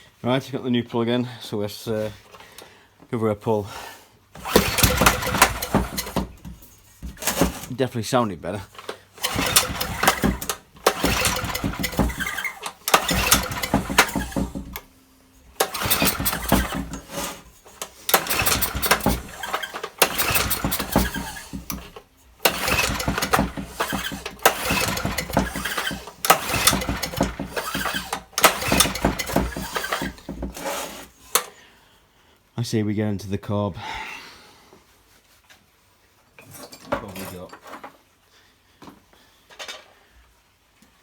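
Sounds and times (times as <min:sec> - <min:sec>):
engine popping and firing: 0:04.4 - 0:07.7, 0:09.2 - 0:14.8, 0:15.6 - 0:30.6
generator engine cranking: 0:04.4 - 0:07.8, 0:08.7 - 0:31.5.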